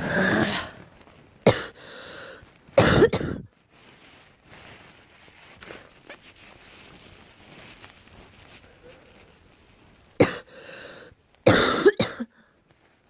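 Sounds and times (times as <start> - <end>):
girl coughing: 1.5 - 1.8, 2.8 - 3.5, 10.2 - 10.5, 11.5 - 12.3.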